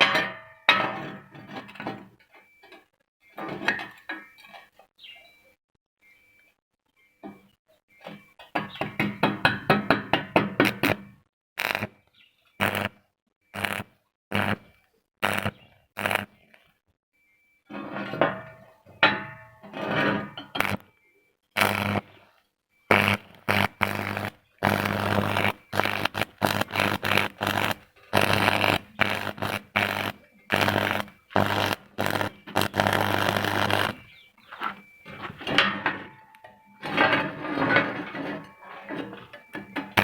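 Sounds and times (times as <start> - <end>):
welding arc crackling and buzzing: 8.8 - 12.0, 12.6 - 13.0, 13.6 - 16.4, 17.8 - 20.9, 21.6 - 22.1, 22.9 - 36.2, 36.8 - 40.0.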